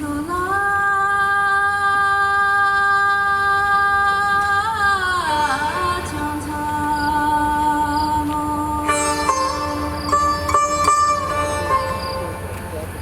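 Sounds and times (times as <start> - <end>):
woman singing long note: 2.9 - 10.5.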